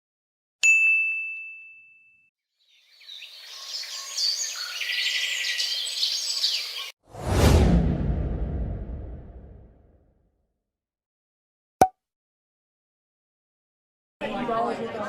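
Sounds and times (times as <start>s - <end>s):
birds chirping: 2.6s - 7.0s.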